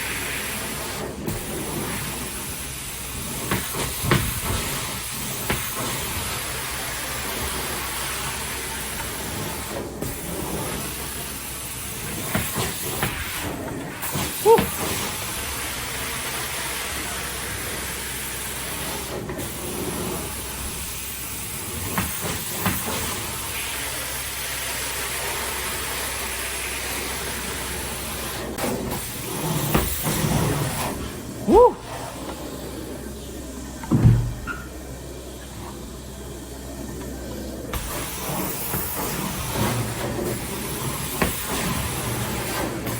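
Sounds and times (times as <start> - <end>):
steam spray and suction hissing: 0.0 - 33.4, 37.4 - 42.9
brief squeak: 34.4 - 34.8.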